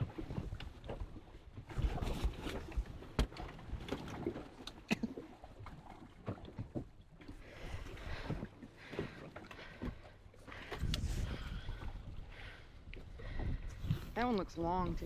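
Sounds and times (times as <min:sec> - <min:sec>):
waves lapping at boat hull: 0:00.0 - 0:15.0.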